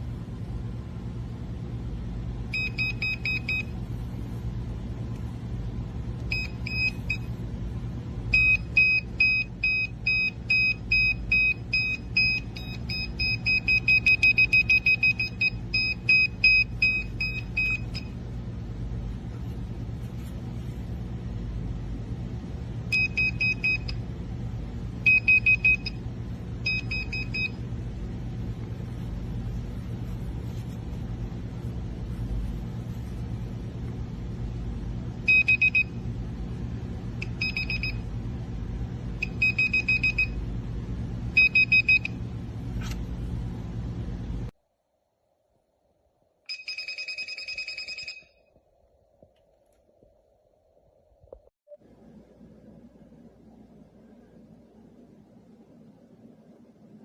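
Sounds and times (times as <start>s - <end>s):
steady low hum: 0.0s - 46.9s, 48.2s - 57.0s
electrical tester beeping: 2.5s - 3.8s, 6.2s - 7.4s, 8.3s - 18.2s, 22.9s - 24.1s, 25.0s - 27.7s, 35.2s - 36.0s, 37.2s - 38.1s, 39.2s - 40.4s, 41.3s - 42.2s, 46.5s - 48.4s.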